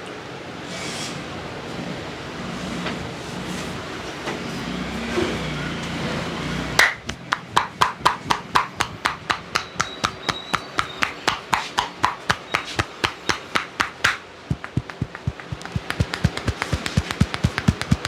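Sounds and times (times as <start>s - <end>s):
hollow hand slaps on head: 6.8s - 18.0s.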